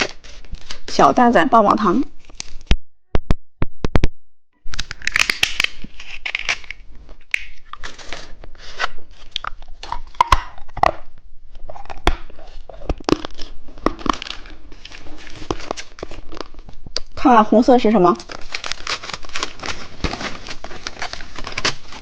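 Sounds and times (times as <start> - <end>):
plastic wrapper crinkling: 4.6 - 11.0, 11.8 - 17.1, 18.2 - 22.0.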